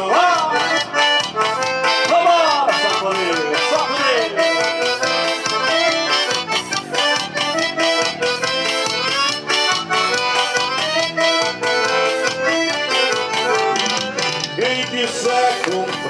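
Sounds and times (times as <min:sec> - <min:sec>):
accordion melody: 0:00.0 - 0:16.0
quick percussion beat: 0:12.9 - 0:16.0.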